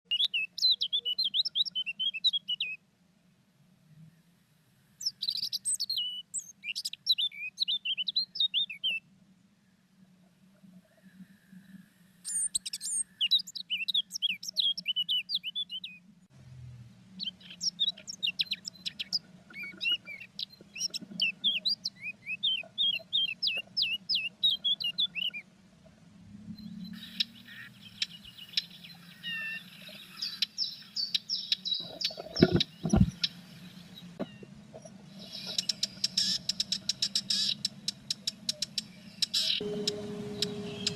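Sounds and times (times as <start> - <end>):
birds chirping: 0.0 - 2.8, 5.0 - 16.2, 17.1 - 40.9
low thumps: 32.1 - 33.2.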